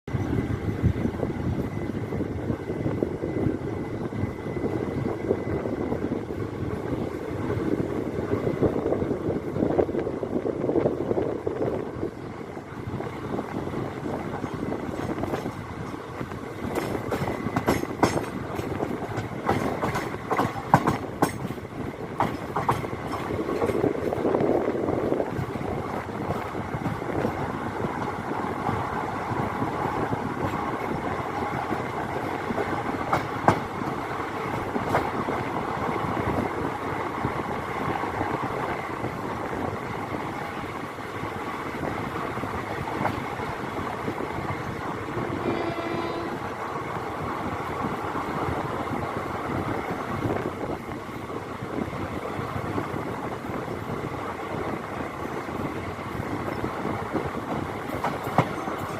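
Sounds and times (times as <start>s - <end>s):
train wheels rolling on track: 0.1s - 58.9s
clicks at rail joints: 16.6s - 21.6s.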